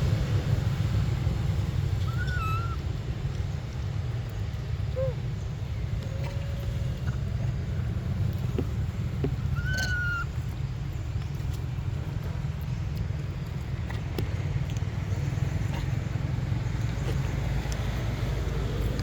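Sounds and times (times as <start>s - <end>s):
low rumble: 0.0s - 19.0s
monkey squeaking: 2.0s - 2.8s, 9.4s - 10.4s
faint clicks: 16.8s - 18.1s.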